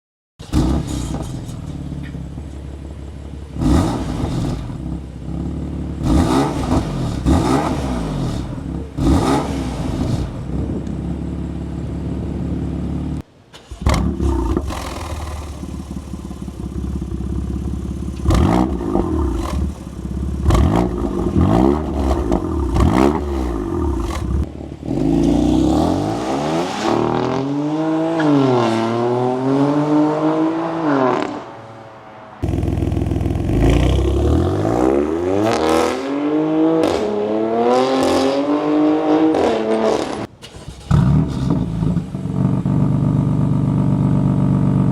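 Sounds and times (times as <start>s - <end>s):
car engine idling: 1.2s - 6.1s, 9.9s - 24.9s, 32.4s - 34.4s, 40.3s - 44.9s.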